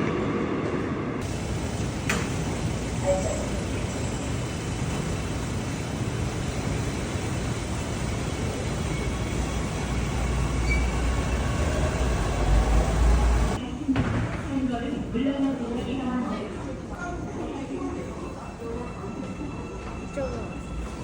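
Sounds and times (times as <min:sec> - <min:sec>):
rail noise: 0:00.0 - 0:13.7
subway train rumbling: 0:00.0 - 0:13.9, 0:14.5 - 0:21.0.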